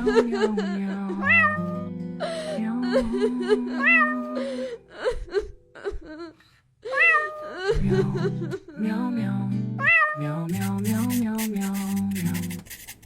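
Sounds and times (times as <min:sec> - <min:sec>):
cat meowing: 0:01.2 - 0:01.9, 0:03.8 - 0:04.4, 0:06.9 - 0:07.6, 0:09.8 - 0:10.3.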